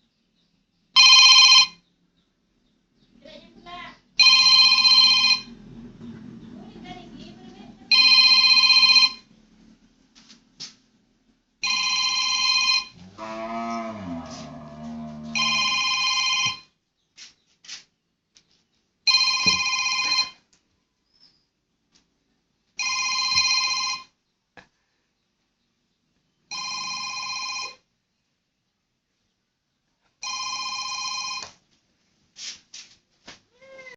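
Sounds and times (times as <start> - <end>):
telephone ringing: 1.0 - 1.8, 4.2 - 5.6, 7.9 - 9.3, 11.6 - 13.0, 15.3 - 16.7, 19.1 - 20.4, 22.8 - 24.2, 26.5 - 27.8, 30.2 - 31.6.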